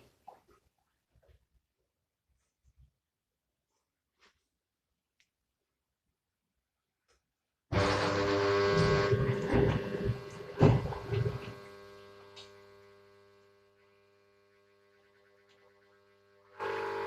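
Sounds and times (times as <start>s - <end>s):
water pump humming: 7.7s - 17.0s
water rushing into washing machine: 7.8s - 12.6s.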